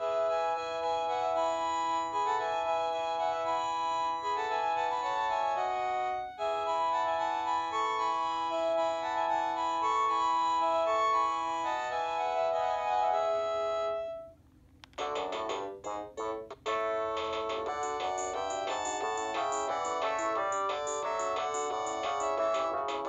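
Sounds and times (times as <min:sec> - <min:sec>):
phone ringtone organ-like chords: 0:15.0 - 0:23.0.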